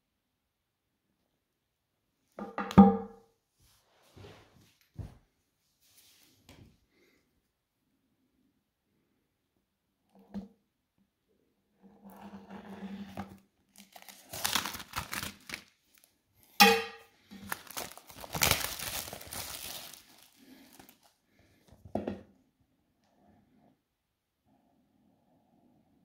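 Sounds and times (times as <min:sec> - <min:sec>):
crinkling and rustling: 0:12.0 - 0:16.2, 0:17.2 - 0:22.0.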